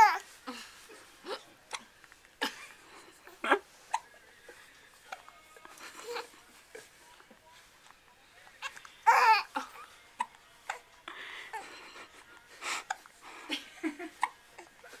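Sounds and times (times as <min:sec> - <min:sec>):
person laughing loudly: 0:13.3 - 0:14.3.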